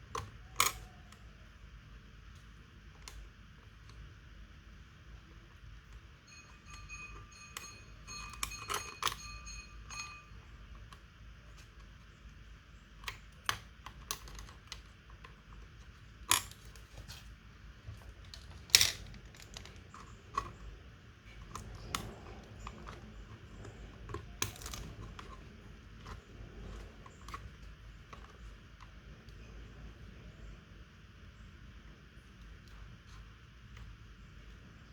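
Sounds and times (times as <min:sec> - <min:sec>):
small plastic and metal parts clicking: 0:00.0 - 0:01.4, 0:02.2 - 0:04.1, 0:05.5 - 0:17.2, 0:17.9 - 0:29.6.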